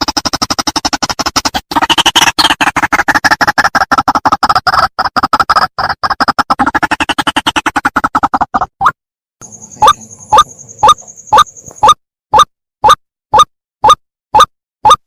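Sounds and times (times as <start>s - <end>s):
bird harsh croaking call: 1.6s - 6.0s, 9.4s - 12.0s.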